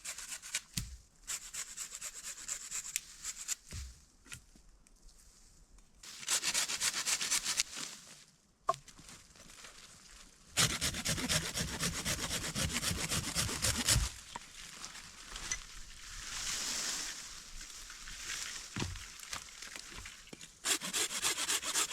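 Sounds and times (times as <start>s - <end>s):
hand saw cutting wood: 0.0s - 0.7s, 1.3s - 3.6s, 6.2s - 7.7s, 10.6s - 14.2s, 20.6s - 21.9s.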